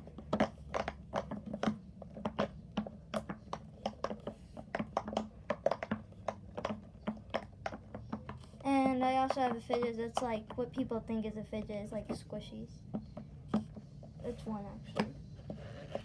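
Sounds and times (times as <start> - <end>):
fidget toy bubbles popping: 0.0 - 11.2.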